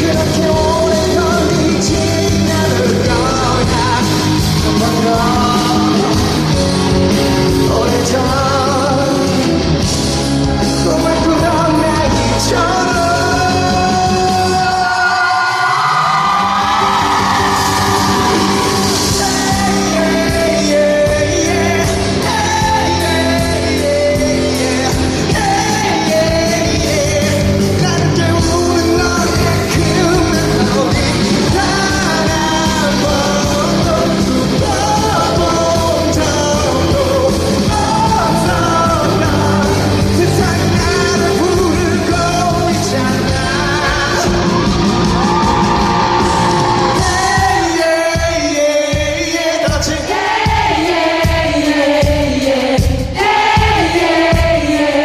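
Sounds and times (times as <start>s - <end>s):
man singing shouted vocals: 0.0s - 6.6s, 10.5s - 50.6s
pop-rock band playing live: 0.0s - 55.0s
drum hits: 16.6s - 55.0s.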